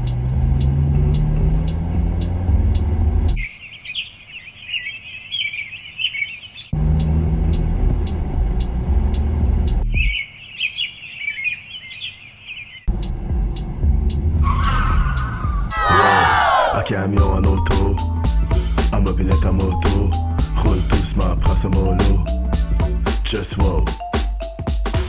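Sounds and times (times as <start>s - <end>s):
steady ticking: 0.0s - 3.5s, 6.8s - 10.2s, 12.9s - 15.8s, 17.2s - 25.0s
vehicle low rumble: 0.0s - 3.6s, 6.7s - 10.2s, 12.5s - 23.1s
birds chirping: 0.0s - 13.6s.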